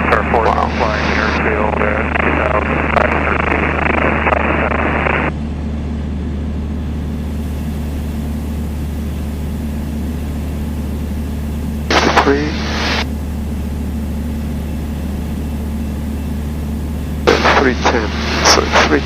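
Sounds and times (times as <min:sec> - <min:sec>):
voice over radio: 0:00.0 - 0:05.3, 0:11.9 - 0:13.1, 0:17.3 - 0:19.0
propeller plane engine droning: 0:00.0 - 0:19.0.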